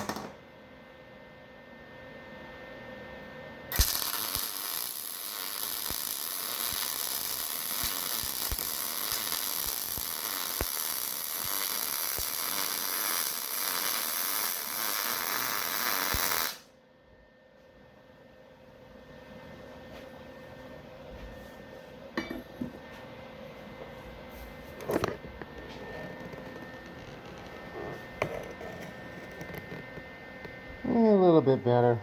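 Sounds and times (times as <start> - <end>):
welder arc crackling hiss: 3.7 - 16.7.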